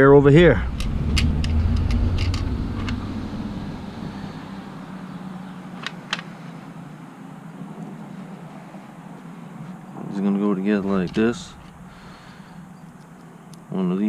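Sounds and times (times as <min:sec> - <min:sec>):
low rumble and hum: 0:00.0 - 0:07.2, 0:10.2 - 0:13.7.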